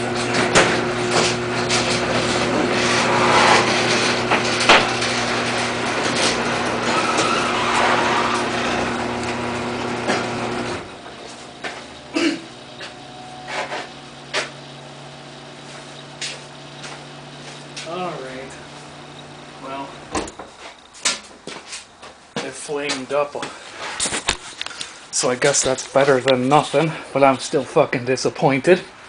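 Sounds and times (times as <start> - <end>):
microwave oven humming: 0.0 - 20.8
burning battery hissing and crackling: 0.0 - 28.6.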